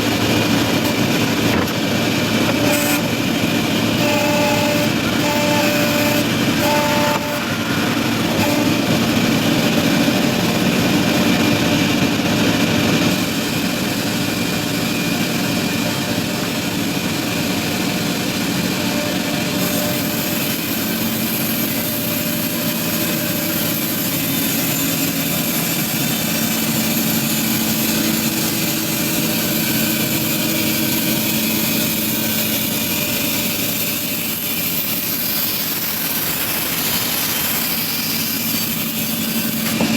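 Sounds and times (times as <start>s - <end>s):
engine-driven machine droning: 0.0s - 35.0s
horn-like tones: 4.0s - 7.7s, 8.3s - 9.0s.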